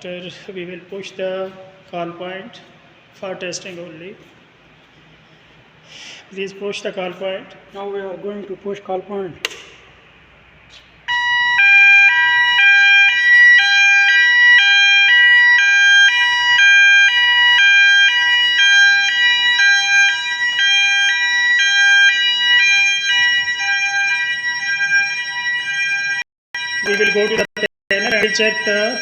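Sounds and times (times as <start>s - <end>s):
two-tone fire alarm: 11.1s - 29.0s.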